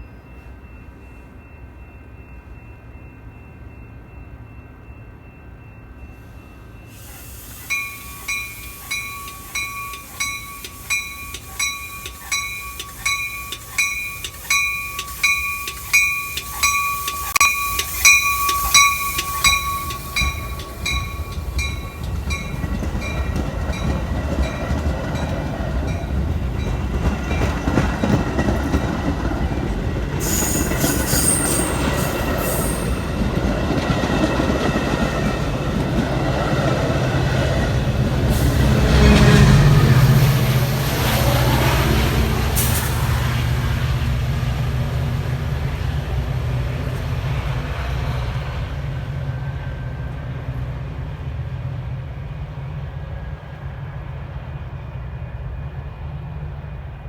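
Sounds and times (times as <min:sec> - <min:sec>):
railroad crossing bell dinging: 0:00.0 - 0:40.7
train rumble: 0:00.0 - 0:57.0
high squeal: 0:06.8 - 0:22.6, 0:30.2 - 0:33.1.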